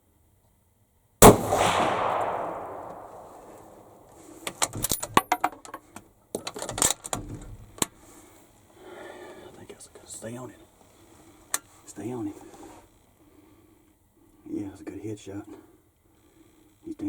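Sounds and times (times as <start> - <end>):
rifle shot with echo: 1.2 - 4.2.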